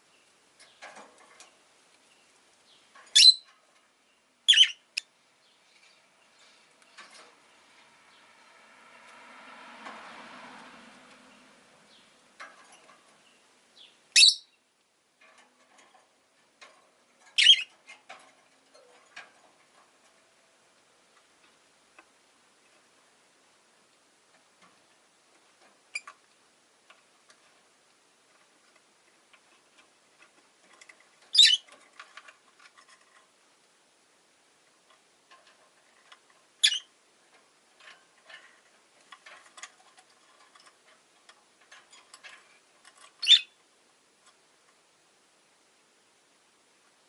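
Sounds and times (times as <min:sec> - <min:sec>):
bird giving shrill calls: 0:03.2 - 0:03.4, 0:04.5 - 0:04.8, 0:14.2 - 0:14.5, 0:43.2 - 0:43.5.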